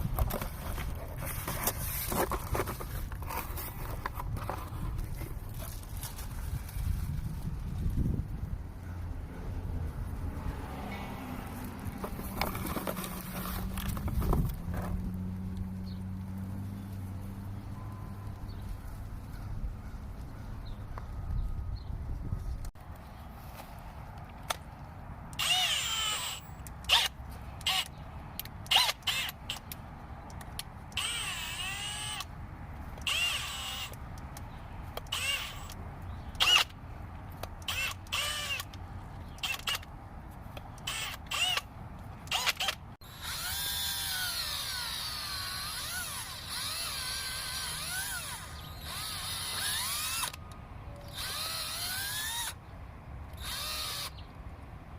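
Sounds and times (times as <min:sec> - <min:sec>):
drill boring into soil: 0:25.4 - 0:27.9, 0:31.0 - 0:32.3, 0:33.1 - 0:34.0, 0:37.6 - 0:38.7, 0:40.8 - 0:41.6, 0:42.3 - 0:50.4, 0:51.1 - 0:52.6, 0:53.4 - 0:54.2.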